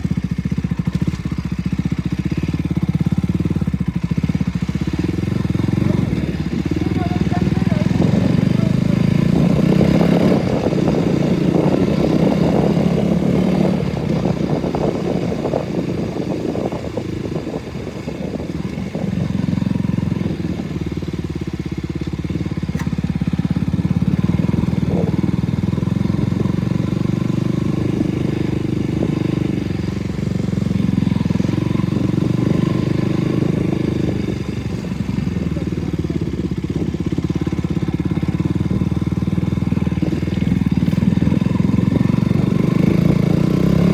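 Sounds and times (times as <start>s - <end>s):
motorcycle engine running: 0.0s - 43.9s.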